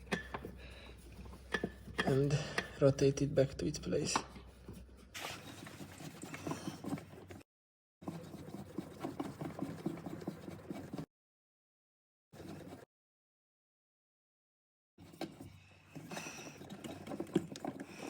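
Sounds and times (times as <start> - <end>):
hands scraping plastic filter: 4.1 - 7.2.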